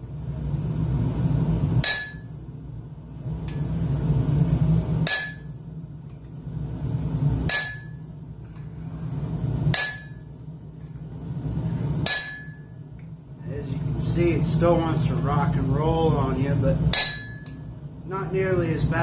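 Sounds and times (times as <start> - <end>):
hammer blows on hot steel: 5.0 - 5.6, 7.4 - 8.0, 9.7 - 10.3, 11.9 - 12.8, 16.8 - 17.6.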